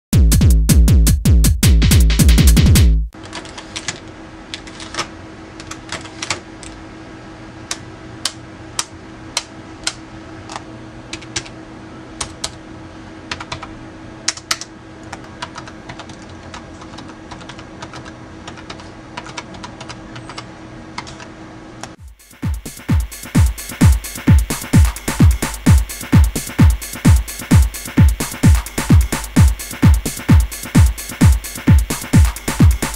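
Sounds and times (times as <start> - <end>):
keyboard keys clicking: 8.8 - 11.5, 13.3 - 13.7, 14.3 - 20.4, 21.0 - 21.3.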